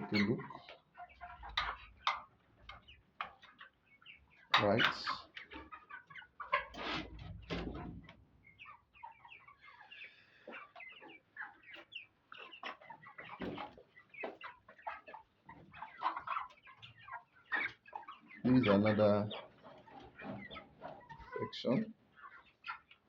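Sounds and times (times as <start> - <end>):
chickens clucking: 0.0 - 23.0.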